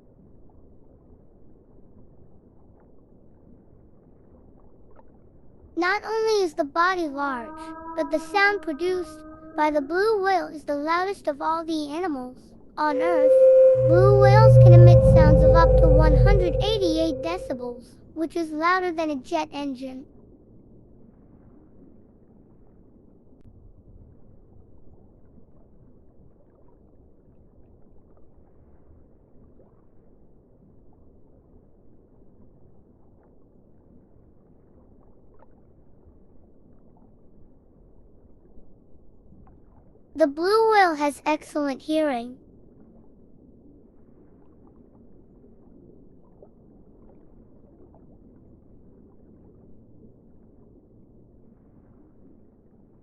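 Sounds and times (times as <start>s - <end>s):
faint rising call: 12.8s - 17.6s
sea rumbling: 12.8s - 17.8s
underwater low rumble: 12.8s - 17.8s, 42.6s - 53.0s.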